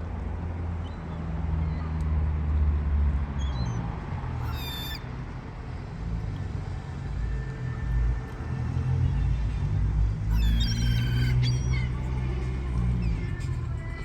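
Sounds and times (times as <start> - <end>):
seagull calling: 4.4 - 5.1, 10.3 - 12.0.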